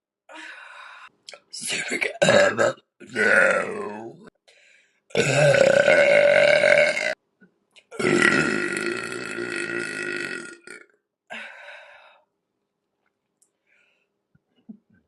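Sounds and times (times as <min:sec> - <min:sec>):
woman burping loudly: 0:02.0 - 0:04.2, 0:05.1 - 0:07.2, 0:07.9 - 0:11.0.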